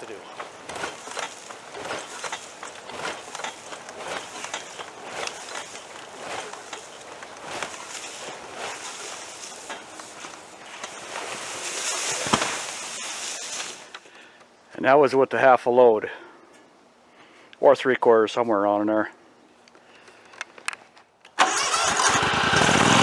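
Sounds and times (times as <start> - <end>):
wet leaves rustling and crunching: 0.0 - 14.0.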